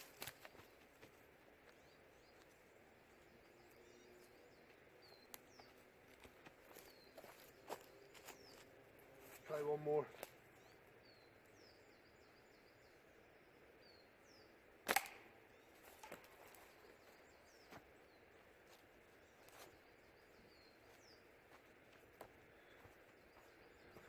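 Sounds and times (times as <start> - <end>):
small birds chirping: 0.0 - 24.0
slingshot shot cracking: 14.8 - 15.4.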